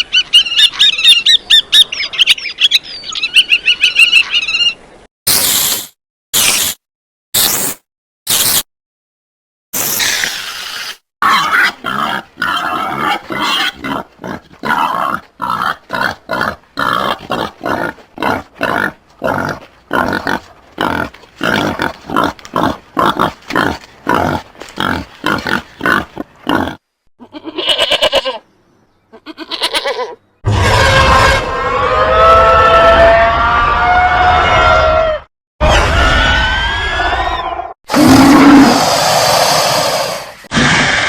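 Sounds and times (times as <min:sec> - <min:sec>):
drawn-out wavering creature call: 0:29.6 - 0:40.3.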